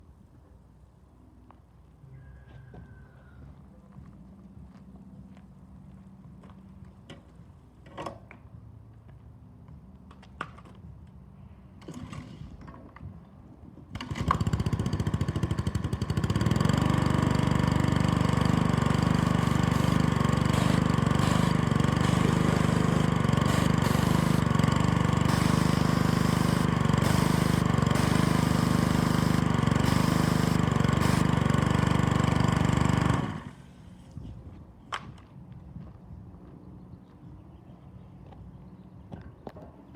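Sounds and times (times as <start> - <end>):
gas engine starting and running: 13.9 - 33.8.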